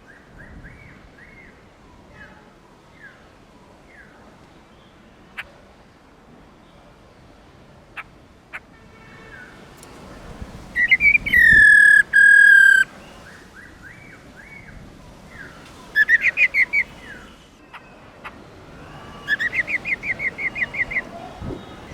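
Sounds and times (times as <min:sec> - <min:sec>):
bird calling whistled notes: 0:10.8 - 0:12.9, 0:16.0 - 0:17.2, 0:18.8 - 0:21.9.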